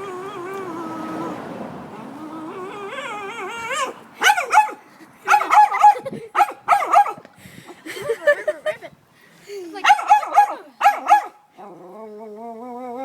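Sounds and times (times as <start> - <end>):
dog whining: 0.0 - 4.7
dog yelping barks: 2.9 - 7.2, 9.8 - 11.4.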